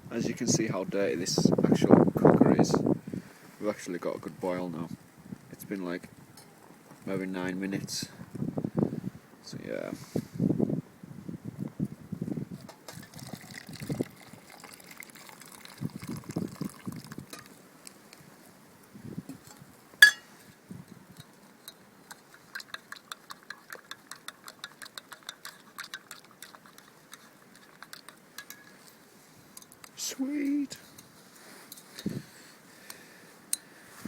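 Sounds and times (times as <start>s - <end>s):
boiling water popping: 12.7s - 18.2s, 19.4s - 20.2s, 21.2s - 28.7s.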